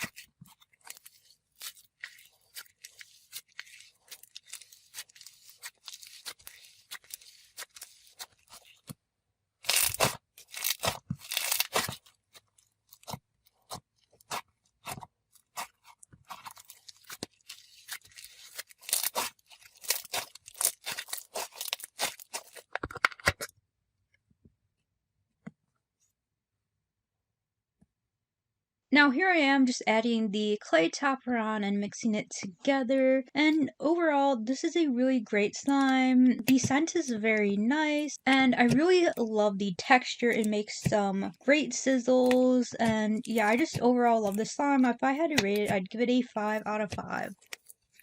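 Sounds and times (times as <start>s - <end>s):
slime crackling and popping: 0.0s - 9.0s, 9.6s - 22.8s, 42.2s - 45.8s.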